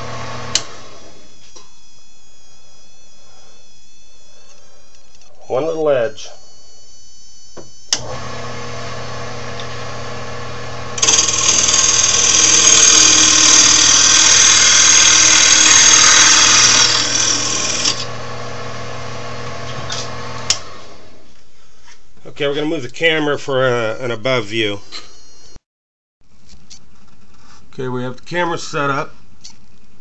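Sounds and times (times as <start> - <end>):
wood lathe motor humming: 0.0 - 6.8, 7.9 - 21.2
rough wood cutting noise: 8.0 - 20.9.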